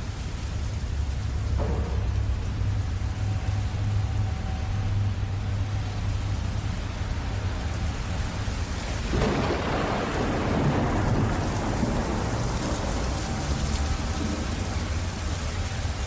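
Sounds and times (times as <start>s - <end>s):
steady rain falling: 0.0s - 16.0s
thunder rolling: 9.0s - 16.0s.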